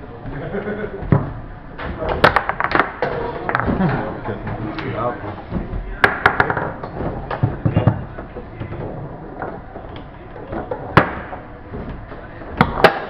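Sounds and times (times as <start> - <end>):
foosball ball clacks: 1.0 - 13.0
background chatter: 3.0 - 12.9.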